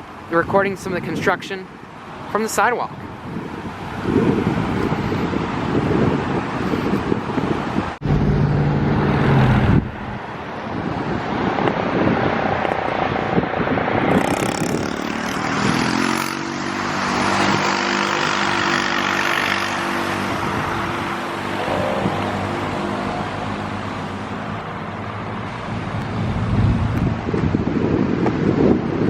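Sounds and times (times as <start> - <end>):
road traffic passing: 0.0 - 29.0
vehicle engine note rising: 8.0 - 10.4.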